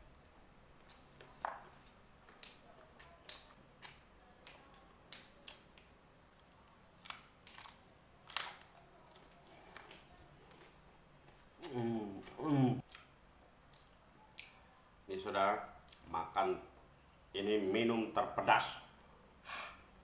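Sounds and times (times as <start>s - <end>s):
chewing crunches and clicks: 0.8s - 14.6s, 15.8s - 16.1s.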